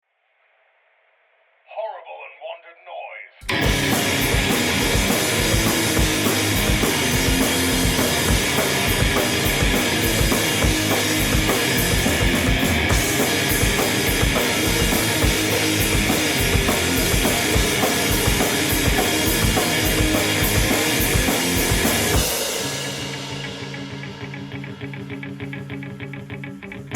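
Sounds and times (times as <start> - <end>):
drum kit pounding fast beat: 3.4 - 24.7
heavy bass drum: 3.4 - 24.7
electric guitar: 3.4 - 26.9
noise rock band playing live: 3.5 - 26.9.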